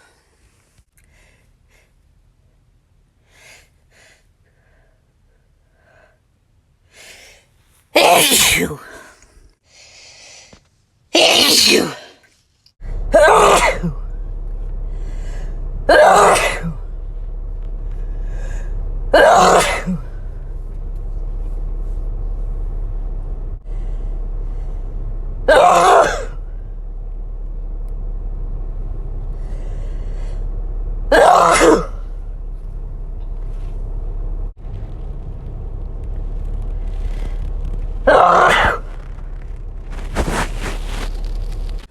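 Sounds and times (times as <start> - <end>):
person sneezing: 8.0 - 9.1, 11.2 - 12.2
steady low hum: 12.8 - 41.9.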